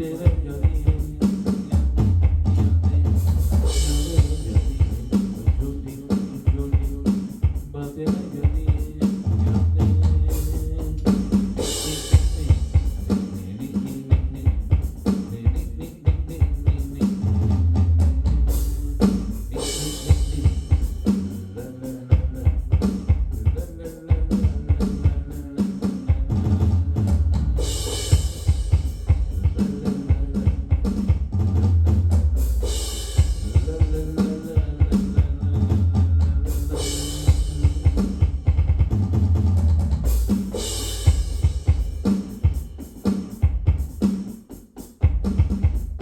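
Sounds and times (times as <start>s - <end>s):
drum kit beat: 0.0s - 46.0s
deep bass notes: 1.8s - 5.9s, 9.3s - 13.6s, 14.2s - 23.6s, 26.2s - 42.0s
cymbal crashes: 11.5s - 13.4s, 18.7s - 21.6s, 27.6s - 29.6s, 32.4s - 34.1s, 36.7s - 38.5s, 40.1s - 43.3s.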